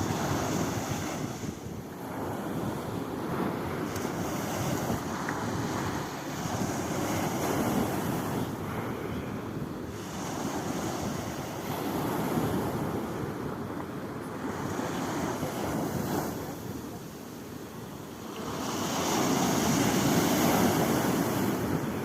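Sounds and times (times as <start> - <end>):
sea waves washing ashore: 0.0 - 22.0
wind noise on microphone: 0.0 - 22.0.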